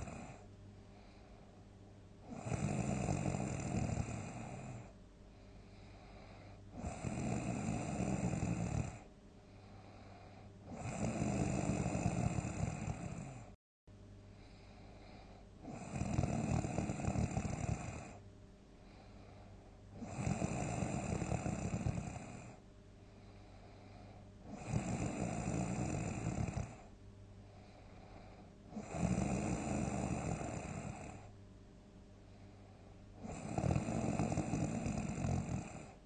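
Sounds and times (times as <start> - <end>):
person snoring loudly: 0.0 - 0.4, 2.2 - 4.9, 6.2 - 9.1, 9.9 - 13.6, 15.0 - 18.2, 20.0 - 22.6, 24.5 - 26.9, 28.2 - 31.3, 33.2 - 36.0
quiet breathing: 0.0 - 13.6, 14.2 - 31.4, 32.0 - 36.0.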